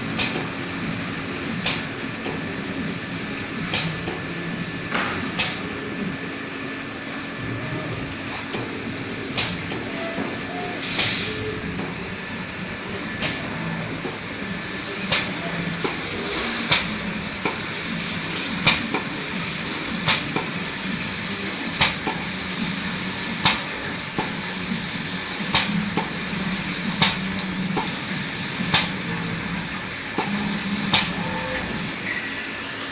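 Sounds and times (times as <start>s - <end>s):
spray machine hissing: 0.0s - 5.7s, 8.5s - 32.0s
sharp machine click: 15.0s - 16.1s.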